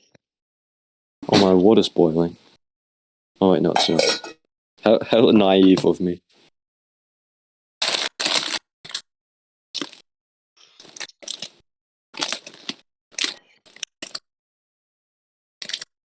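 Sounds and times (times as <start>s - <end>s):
plastic packet crinkling: 7.8s - 9.0s, 9.8s - 10.0s, 10.8s - 11.6s, 12.2s - 14.2s, 15.6s - 15.9s.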